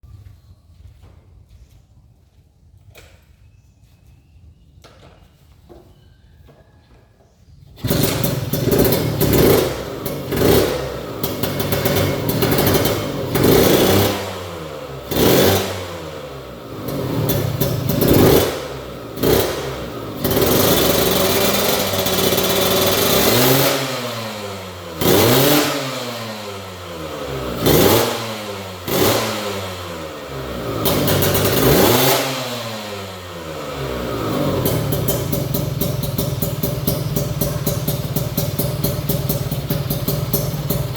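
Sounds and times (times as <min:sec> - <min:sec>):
motorcycle engine revving: 0:07.7 - 0:40.9.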